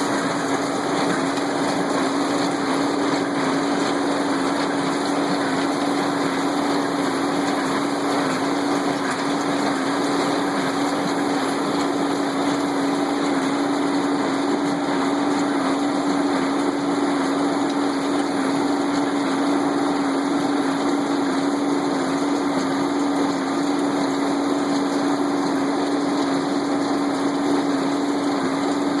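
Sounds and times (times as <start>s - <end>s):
tractor engine humming: 0.0s - 20.4s.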